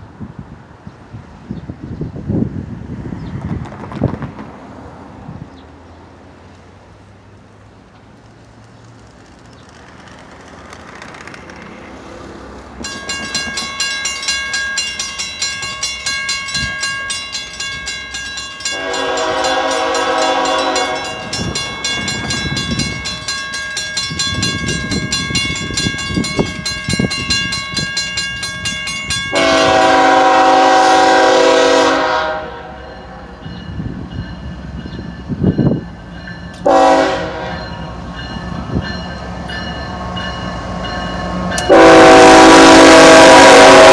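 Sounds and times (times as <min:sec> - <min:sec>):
diesel locomotive rumble: 0:00.0 - 0:43.9
bell ringing rapidly: 0:12.8 - 0:29.8
locomotive air horn blasts: 0:18.7 - 0:21.4, 0:29.3 - 0:32.9, 0:36.6 - 0:37.8, 0:41.6 - 0:43.9.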